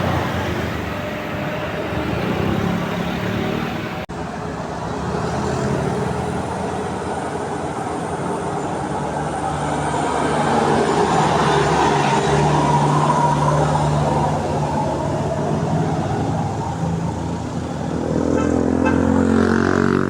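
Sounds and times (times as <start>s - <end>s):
heavy vehicle engines running: 0.0s - 20.0s.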